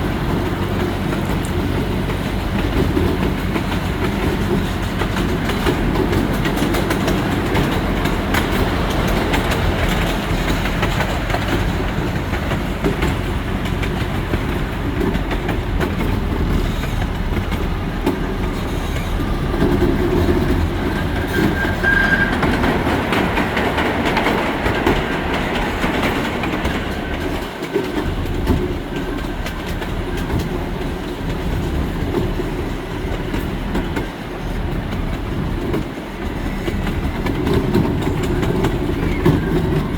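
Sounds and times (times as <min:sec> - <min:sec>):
miniature train rumbling on track: 0:00.0 - 0:39.9
high-pitched wheel squeal: 0:20.8 - 0:22.7.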